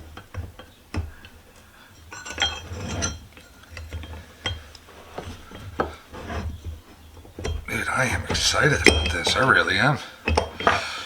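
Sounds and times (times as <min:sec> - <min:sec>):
metal tools clinking on vise: 0:02.0 - 0:06.4, 0:07.4 - 0:10.8.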